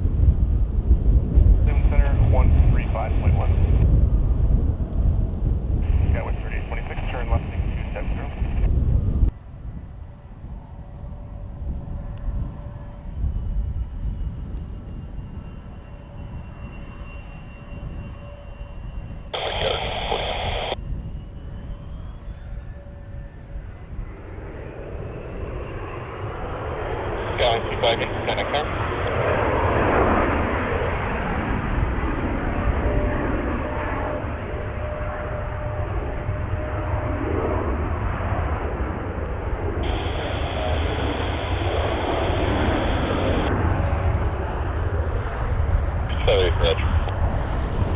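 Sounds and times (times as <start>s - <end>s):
distant jet engine whine: 0.0s - 47.9s
wind rumble on microphone: 0.0s - 47.9s
radio static burst: 1.7s - 3.7s, 5.8s - 8.7s, 19.4s - 20.8s, 27.2s - 28.8s, 39.8s - 43.5s, 46.1s - 47.1s.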